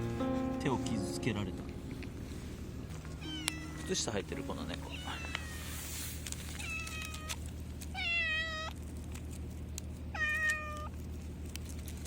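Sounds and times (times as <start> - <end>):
cat meowing: 3.1 - 5.8, 6.5 - 8.8, 10.1 - 10.9.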